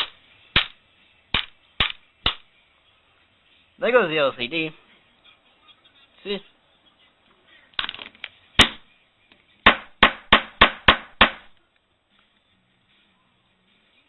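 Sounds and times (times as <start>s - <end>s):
hard knocks on surface: 9.7s - 11.5s.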